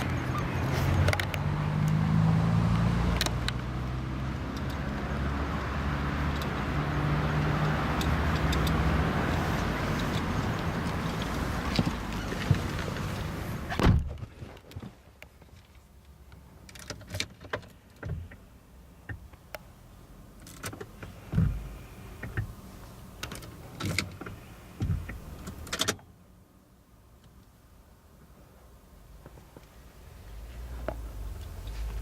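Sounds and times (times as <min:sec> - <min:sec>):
outside noise: 0:00.0 - 0:32.0
thump: 0:13.7 - 0:14.3.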